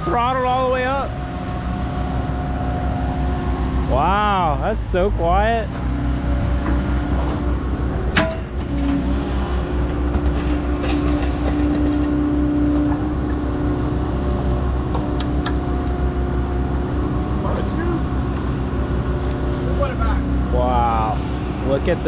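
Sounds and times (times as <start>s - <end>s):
steady higher tone: 0.0s - 8.7s
excavator diesel engine running: 0.0s - 22.0s.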